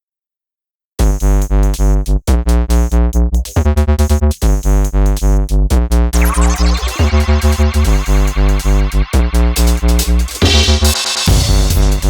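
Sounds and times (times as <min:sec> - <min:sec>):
electronic music with synth bass: 0:06.1 - 0:12.0.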